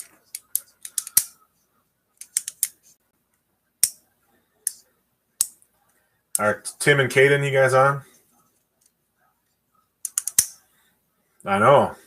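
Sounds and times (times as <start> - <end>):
sharp clicks and taps: 2.2 - 4.0, 5.4 - 5.7, 10.0 - 10.6.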